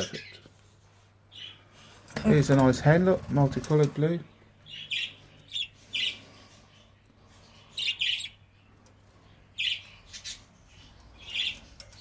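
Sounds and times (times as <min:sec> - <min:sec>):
budgerigars chirping: 0:04.6 - 0:08.7, 0:09.3 - 0:12.0.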